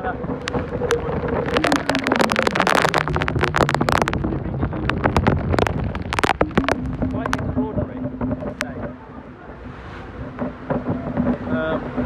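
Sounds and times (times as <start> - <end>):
heavy rain pattering: 0.0 - 12.0.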